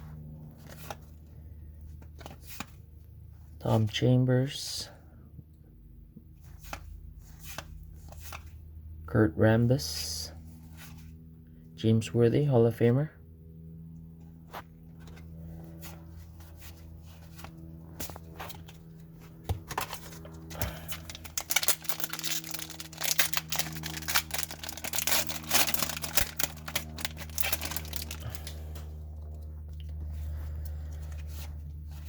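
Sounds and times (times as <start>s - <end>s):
steady low hum: 0.0s - 32.0s
wrapper tearing and crinkling: 19.8s - 28.7s.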